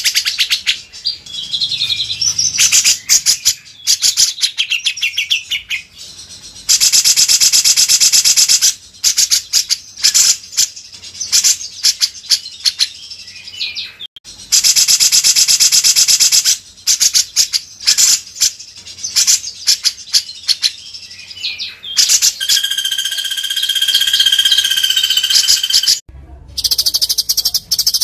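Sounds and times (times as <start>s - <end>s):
songbird chips and trills: 0.0s - 26.0s.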